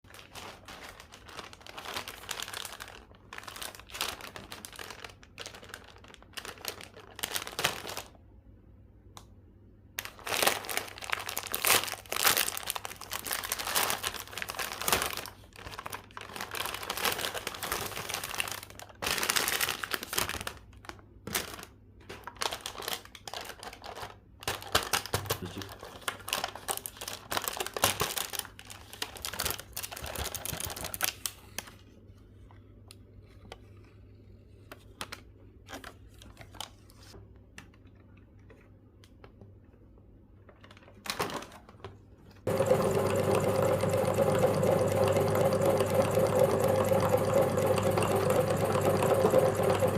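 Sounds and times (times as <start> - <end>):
plastic wrapper crinkling: 0.0 - 8.2, 10.0 - 31.9, 34.8 - 37.2.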